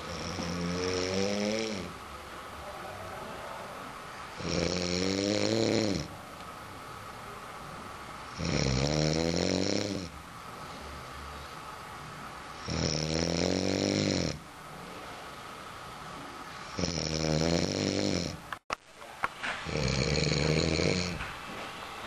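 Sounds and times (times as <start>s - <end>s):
person snoring: 0.0s - 2.0s, 4.4s - 6.1s, 8.3s - 10.1s, 12.6s - 14.4s, 16.6s - 18.4s, 19.6s - 21.2s.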